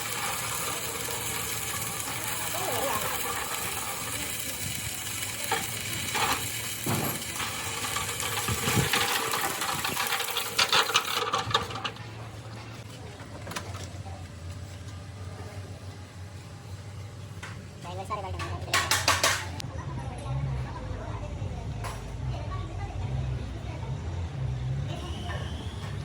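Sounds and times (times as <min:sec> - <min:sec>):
steady hiss: 0:00.0 - 0:10.8.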